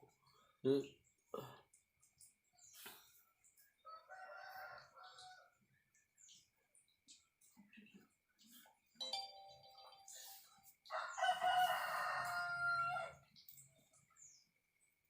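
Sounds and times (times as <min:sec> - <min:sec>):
rooster crowing: 0:03.9 - 0:05.5, 0:10.9 - 0:13.2.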